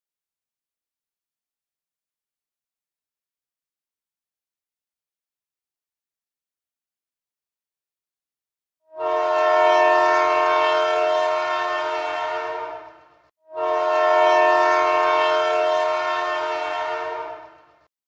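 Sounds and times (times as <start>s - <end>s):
train horn blasts: 8.9s - 17.9s.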